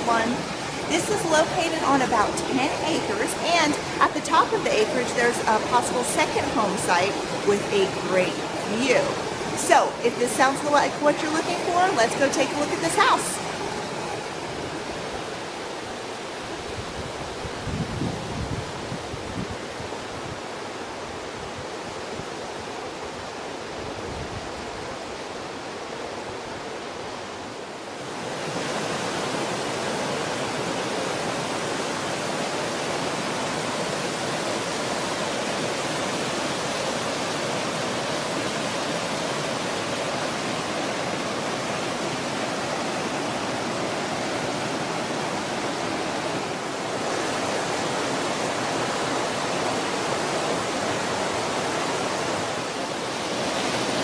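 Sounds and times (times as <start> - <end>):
creek rushing over waterfalls: 0.0 - 54.0.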